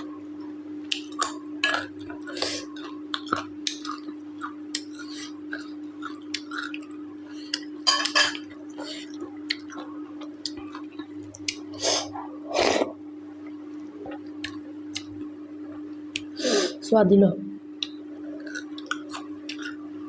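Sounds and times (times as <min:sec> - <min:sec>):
steady low hum: 0:00.0 - 0:20.0
chewing and mouth smacking: 0:00.8 - 0:11.7, 0:17.8 - 0:19.8
clinks against a plate: 0:07.9 - 0:08.4.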